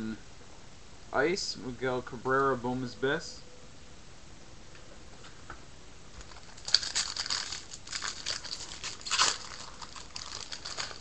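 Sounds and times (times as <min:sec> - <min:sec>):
foil wrapper crinkling: 0:06.2 - 0:11.0.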